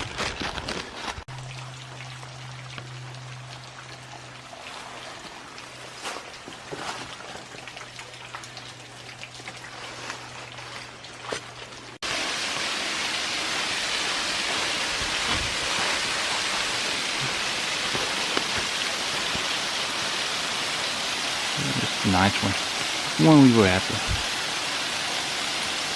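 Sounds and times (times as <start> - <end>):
waterfall rushing and splashing: 12.0 - 25.9.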